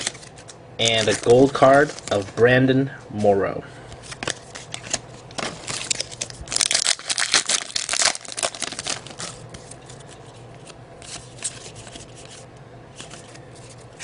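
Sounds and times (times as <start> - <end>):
card pack wrapper tearing: 0.0 - 2.3, 4.1 - 9.4
cards sliding and handled: 9.1 - 14.0.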